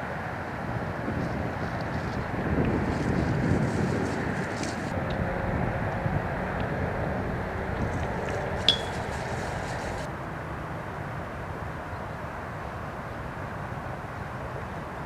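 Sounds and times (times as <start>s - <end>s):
outdoor background noise: 0.0s - 15.0s
disc hitting metal basket: 8.6s - 10.0s.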